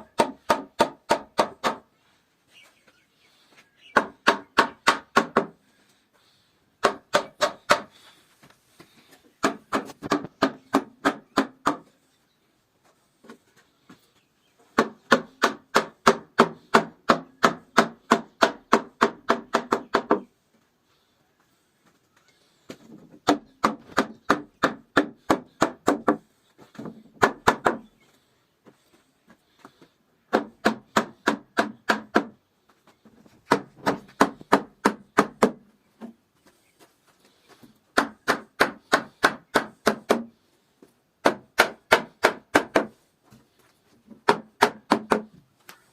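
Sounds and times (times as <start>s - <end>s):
tool strikes on wood: 0.0s - 1.9s, 3.9s - 5.6s, 6.8s - 8.0s, 9.4s - 11.9s, 14.7s - 20.3s, 22.7s - 27.9s, 30.3s - 32.4s, 33.4s - 36.2s, 37.9s - 40.4s, 41.2s - 43.0s, 44.1s - 45.4s.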